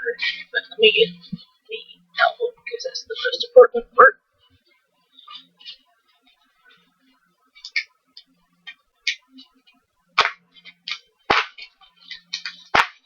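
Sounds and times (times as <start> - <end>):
sharp tape snaps: 10.2 - 13.0.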